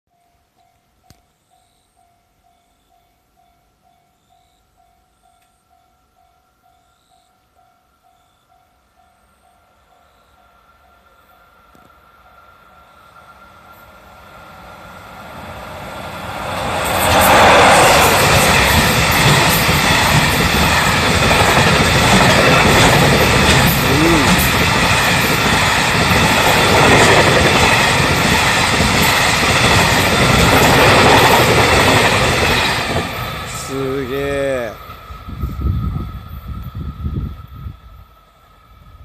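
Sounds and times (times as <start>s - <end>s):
train rumbling: 9.0s - 39.0s
wheels clattering over rail joints: 16.3s - 33.6s.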